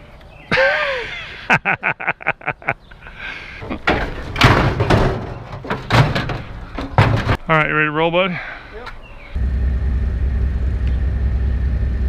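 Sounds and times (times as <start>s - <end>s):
metal scrap banging and rattling: 3.6s - 7.5s.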